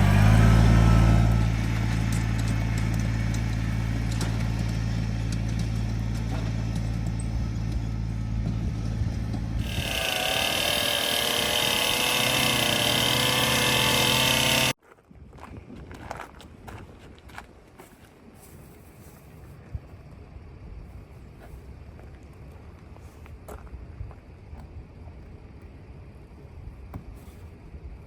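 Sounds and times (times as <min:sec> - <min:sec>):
wood chipper engine running: 0:00.0 - 0:14.8.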